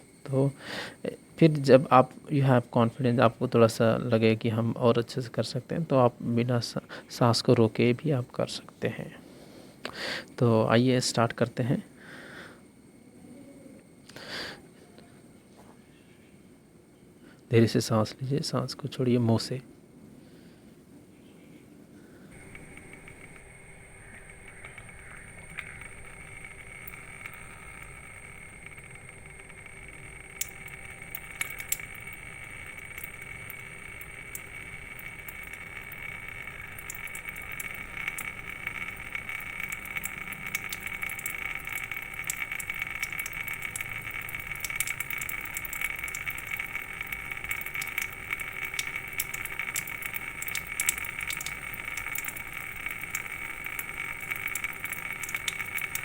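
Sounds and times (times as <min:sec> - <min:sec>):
faint high-pitched tone: 0:13.0 - 0:13.9
water trickling and dripping: 0:22.3 - 0:56.0.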